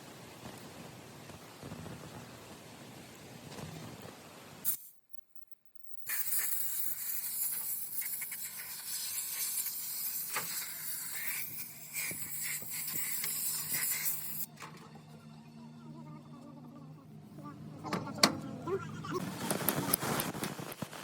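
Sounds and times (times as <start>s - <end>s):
loud steady hiss: 6.1s - 14.5s.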